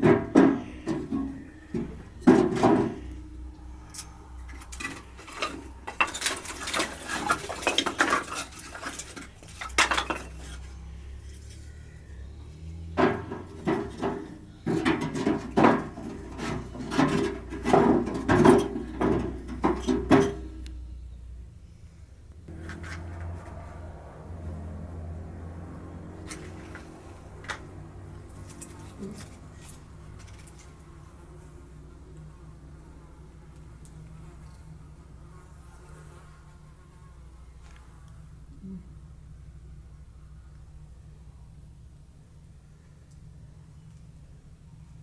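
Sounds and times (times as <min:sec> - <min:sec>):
pots and utensils clinking: 0:04.6 - 0:10.7.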